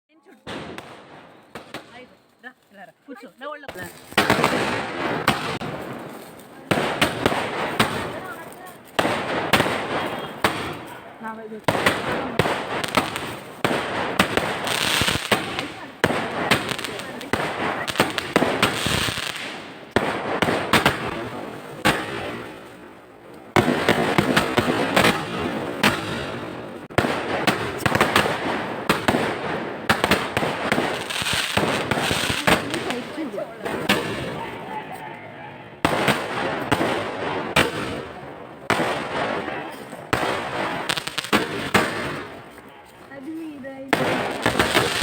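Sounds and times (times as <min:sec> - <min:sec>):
crackling hiss: 0:03.4 - 0:34.5
sharp explosive bangs: 0:03.7 - 0:34.6, 0:35.8 - 0:42.6, 0:43.9 - 0:45.0.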